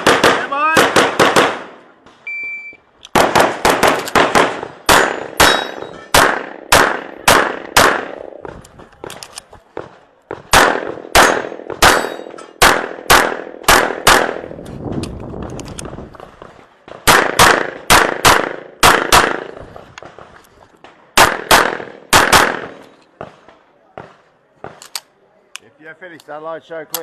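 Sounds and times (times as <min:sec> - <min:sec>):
metallic target ring: 0:05.4 - 0:06.2, 0:11.9 - 0:12.6
handgun shots: 0:10.5 - 0:14.4.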